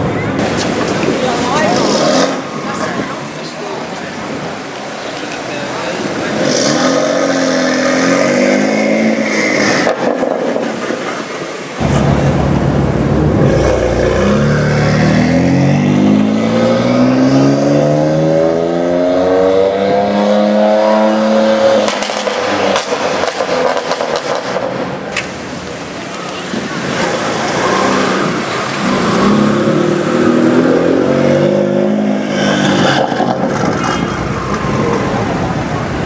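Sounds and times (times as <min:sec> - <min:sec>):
exhaust pops and crackles: 0:11.8 - 0:15.3, 0:21.9 - 0:26.4
car engine revving: 0:11.8 - 0:19.4, 0:27.6 - 0:36.0.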